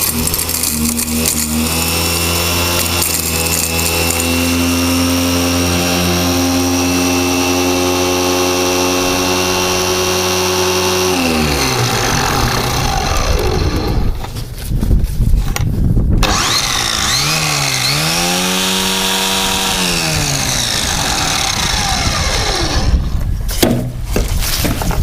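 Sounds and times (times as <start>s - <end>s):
rock grinding hiss: 0.0s - 4.8s
cordless drill running: 0.0s - 14.4s, 16.2s - 23.2s.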